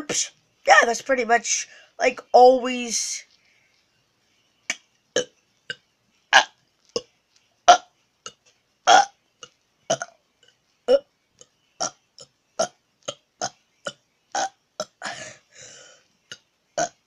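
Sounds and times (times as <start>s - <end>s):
person burping: 5.2s - 7.1s, 7.7s - 9.2s, 9.9s - 10.2s, 10.9s - 11.1s, 12.6s - 15.4s, 16.3s - 17.0s.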